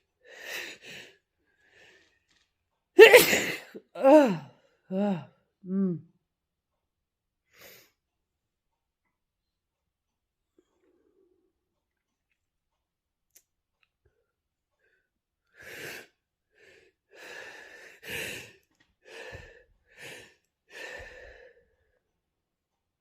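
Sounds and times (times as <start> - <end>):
person gasping for breath: 15.6 - 21.6.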